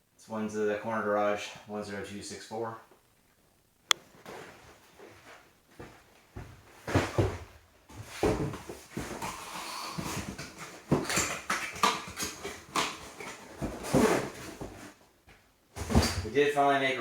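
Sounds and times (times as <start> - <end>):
cardboard boxes rustling and knocking: 4.2 - 16.3.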